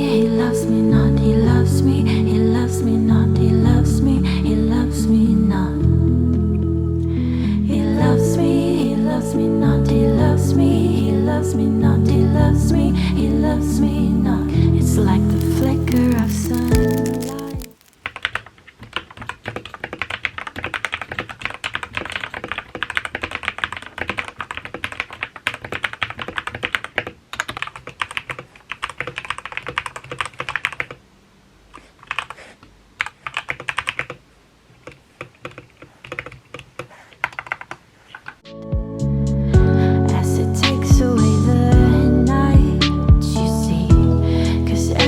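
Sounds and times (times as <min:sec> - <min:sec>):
mechanical keyboard typing: 0:15.2 - 0:18.3, 0:19.0 - 0:31.0, 0:33.0 - 0:34.2.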